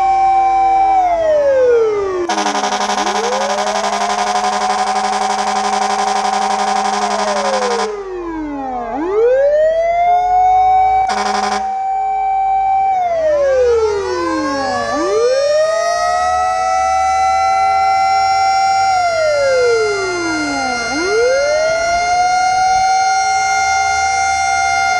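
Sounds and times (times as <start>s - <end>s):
fire truck siren wailing: 0.0s - 24.9s
buzzy horn blast: 2.3s - 8.0s, 11.1s - 11.8s.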